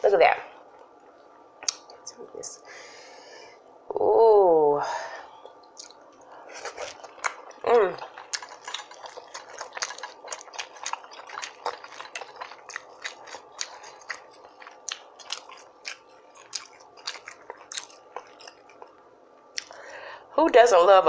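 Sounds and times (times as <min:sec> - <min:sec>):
wet chewing mouth clicks: 0:05.6 - 0:19.8.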